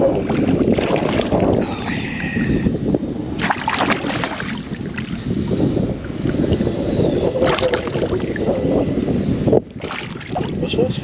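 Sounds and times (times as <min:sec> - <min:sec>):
water moving around kayak: 0:00.0 - 0:02.6, 0:03.3 - 0:08.8, 0:09.5 - 0:11.0
wind buffeting microphone: 0:00.0 - 0:11.0
brief splashes or knocks: 0:03.4 - 0:05.1.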